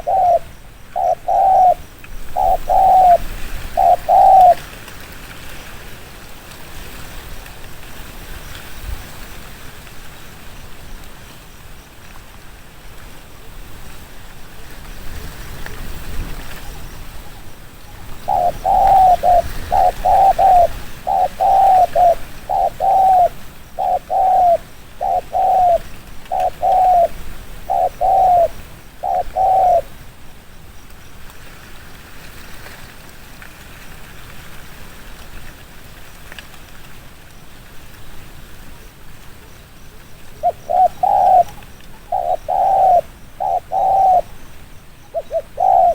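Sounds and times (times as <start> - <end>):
dove cooing: 0.0 - 4.8, 16.6 - 30.0, 40.2 - 45.9.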